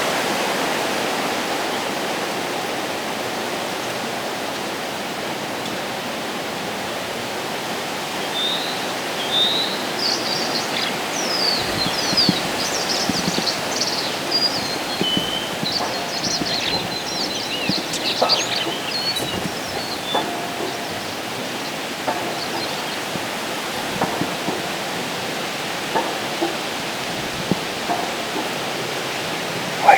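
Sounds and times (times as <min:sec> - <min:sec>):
wind rushing through trees: 0:07.3 - 0:29.9
songbirds chirping: 0:08.1 - 0:29.9.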